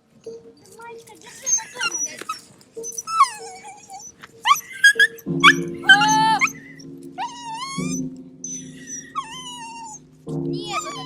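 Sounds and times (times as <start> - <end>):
dogs whining and yelping: 1.0 - 11.0
low music chord: 5.2 - 11.0.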